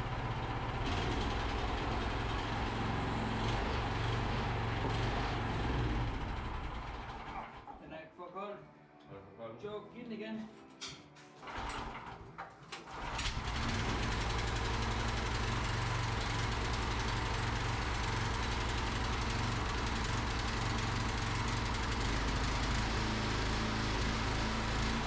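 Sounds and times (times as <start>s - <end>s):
engine running steadily: 0.0s - 7.8s, 12.9s - 25.0s.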